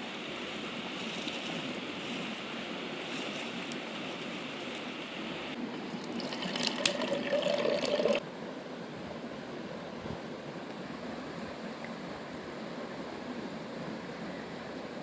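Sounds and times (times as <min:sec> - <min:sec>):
liquid pouring into a container: 0:05.8 - 0:08.2.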